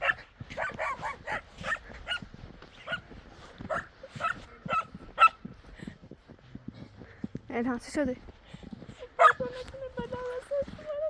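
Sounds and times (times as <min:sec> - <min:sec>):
dog yipping: 0:00.0 - 0:02.2, 0:03.7 - 0:05.4, 0:09.2 - 0:09.4.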